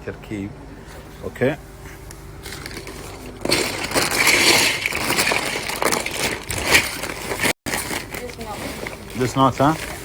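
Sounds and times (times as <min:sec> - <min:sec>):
plastic pieces rattling: 0:02.5 - 0:10.0.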